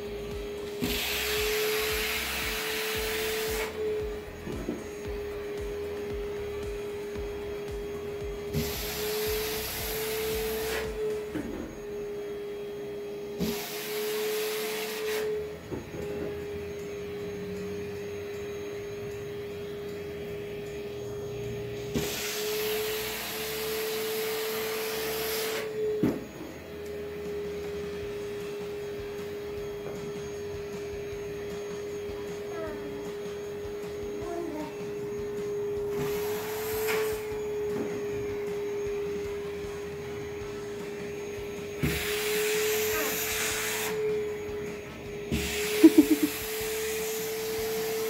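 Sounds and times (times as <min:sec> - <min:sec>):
vacuum sucking air rush: 0:00.0 - 0:04.1
vacuum cleaner running: 0:00.0 - 0:48.0.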